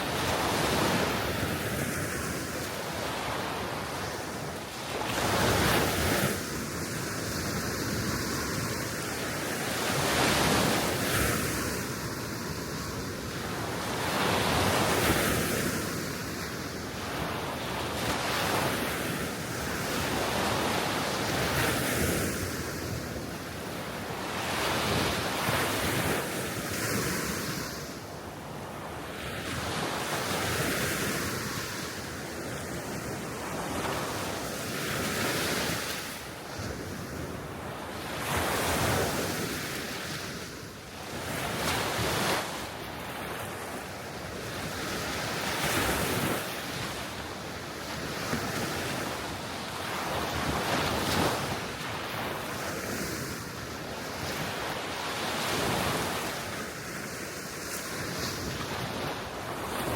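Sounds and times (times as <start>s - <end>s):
waves washing onto shore: 0.0s - 59.9s.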